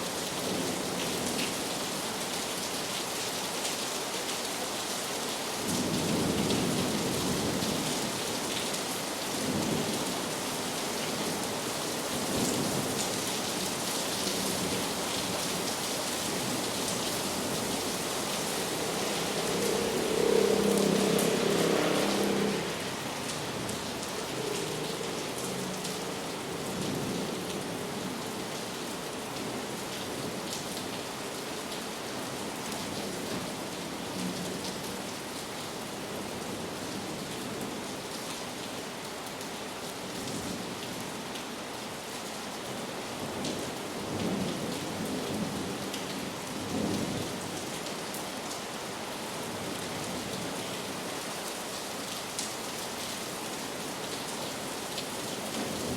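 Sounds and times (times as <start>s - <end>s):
heavy rain pouring: 0.0s - 55.9s
distant thunder rumbling: 17.4s - 22.8s.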